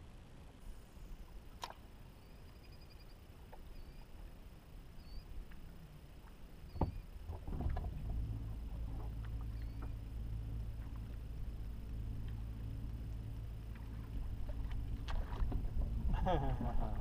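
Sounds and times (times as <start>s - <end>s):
boat motor humming: 0.3s - 17.0s
faint high bird chirps: 2.1s - 4.1s, 4.9s - 5.4s, 6.6s - 7.1s, 9.4s - 10.0s.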